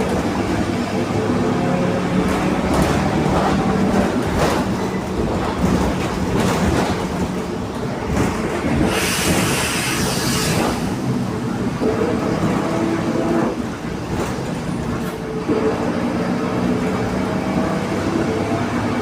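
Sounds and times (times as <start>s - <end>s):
loud hiss: 8.8s - 10.9s.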